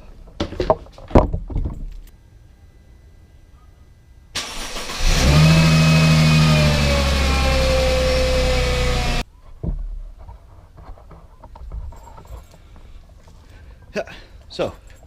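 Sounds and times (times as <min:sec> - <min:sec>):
car engine fast idle: 0:04.4 - 0:09.2
car starter cranking: 0:04.4 - 0:09.2.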